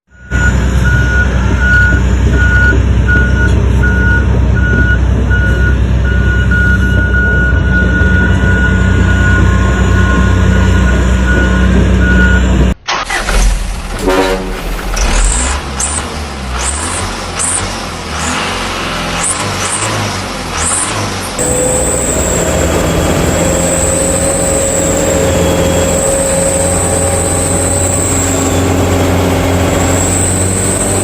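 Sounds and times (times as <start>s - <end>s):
reversing beeper: 0.1s - 12.8s, 21.4s - 31.0s
truck engine running: 0.1s - 31.0s
uneven engine sound: 0.1s - 31.0s.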